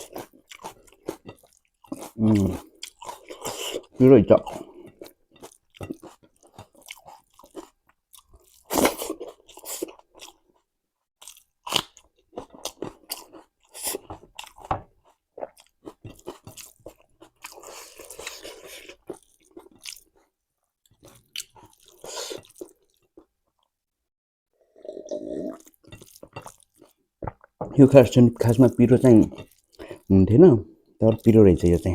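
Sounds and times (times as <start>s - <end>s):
crunchy chewing of salad: 0.0s - 23.7s.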